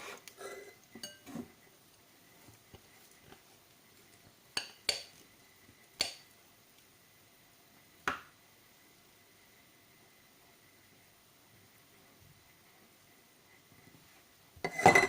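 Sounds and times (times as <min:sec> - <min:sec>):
utensils clinking against dishes: 0:00.6 - 0:01.4, 0:14.6 - 0:15.0.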